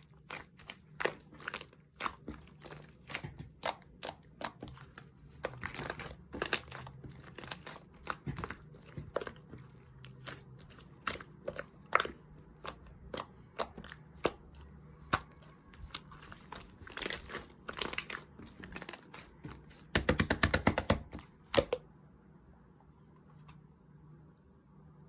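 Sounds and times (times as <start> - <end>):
crinkling: 0.0 - 21.8
sharp clicks and taps: 19.9 - 21.8.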